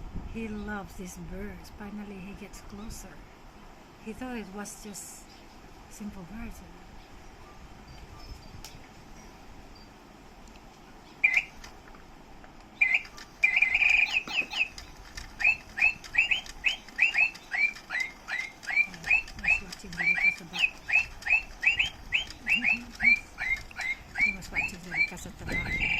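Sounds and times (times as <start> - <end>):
toy bird chirping electronically: 11.2 - 11.7, 12.8 - 25.9.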